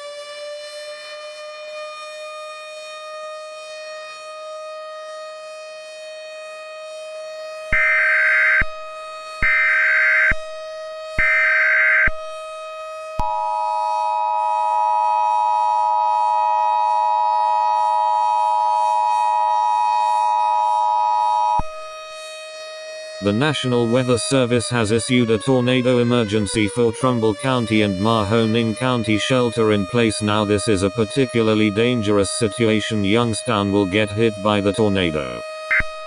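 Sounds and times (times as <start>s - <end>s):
civil defense siren wailing: 0.0s - 36.0s
two-tone alert signal: 35.7s - 36.0s.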